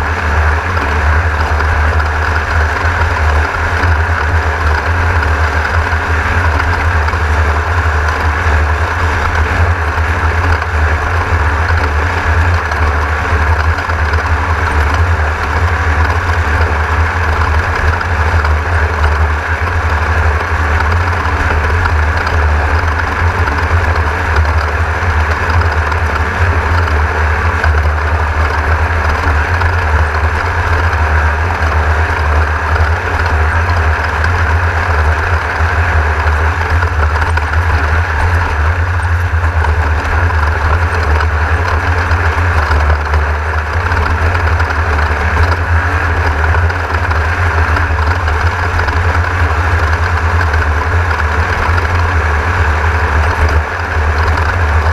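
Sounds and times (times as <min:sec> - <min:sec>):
deep engine drone: 0:00.0 - 0:54.9.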